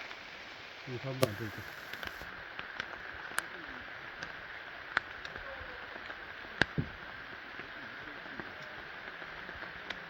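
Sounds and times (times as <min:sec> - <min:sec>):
steady forest hiss: 0:00.0 - 0:10.0.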